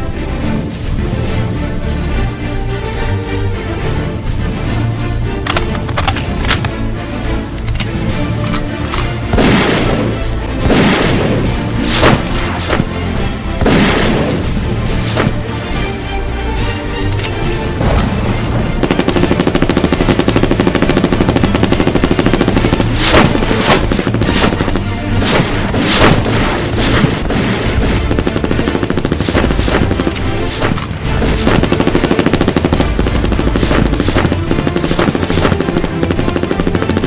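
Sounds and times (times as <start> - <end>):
machine-gun fire: 9.2 - 13.0, 13.6 - 15.4, 17.8 - 37.0
single gunshots: 9.3 - 13.0, 13.6 - 15.4, 22.8 - 31.8.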